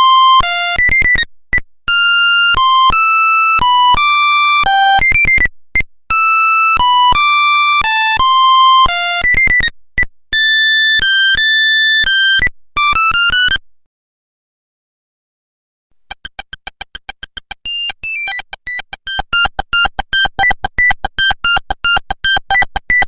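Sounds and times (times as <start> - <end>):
monophonic phone ringtone: 16.2 - 23.0.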